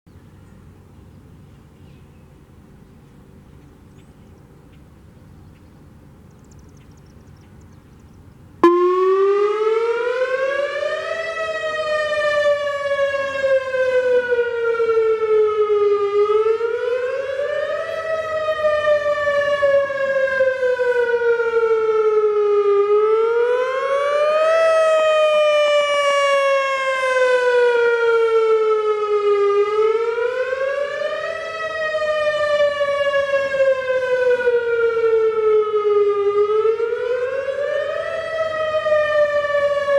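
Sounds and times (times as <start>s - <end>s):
tornado siren wailing: 8.6s - 39.9s.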